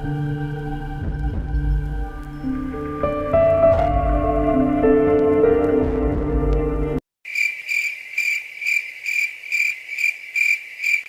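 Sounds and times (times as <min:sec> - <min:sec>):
soft sustained music: 0:00.0 - 0:07.0
crickets chirping: 0:07.3 - 0:11.0.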